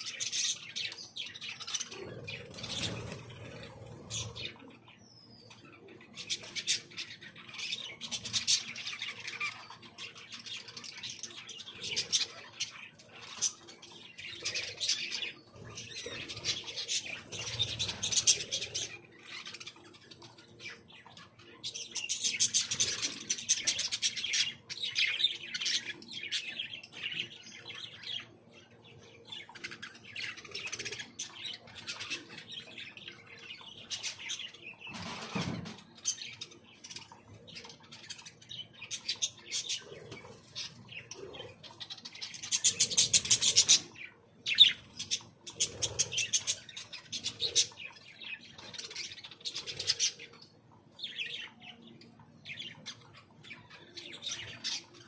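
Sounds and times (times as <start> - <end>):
aviary birds chirping: 0.0 - 55.0.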